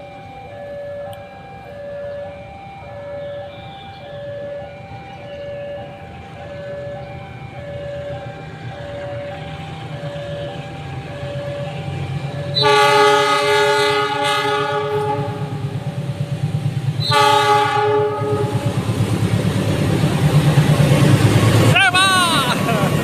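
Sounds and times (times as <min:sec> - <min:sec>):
low rumble of train: 0:00.0 - 0:23.0
train horn blasts: 0:12.5 - 0:15.8, 0:17.0 - 0:18.7.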